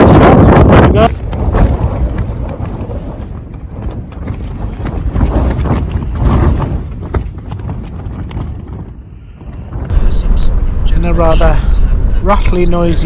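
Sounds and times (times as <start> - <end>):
gusting wind buffeting microphone: 0.0 - 13.0.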